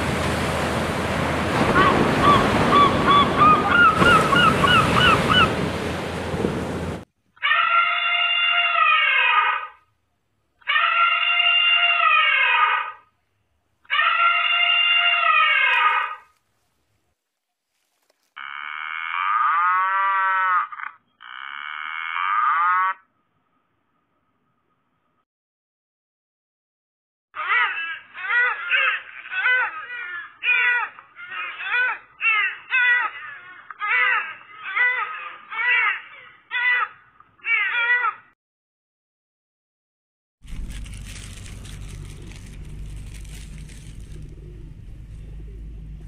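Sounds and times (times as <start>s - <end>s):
peacock calling: 1.7s - 5.7s, 7.4s - 9.9s, 10.6s - 13.1s, 13.8s - 16.6s, 27.4s - 38.3s.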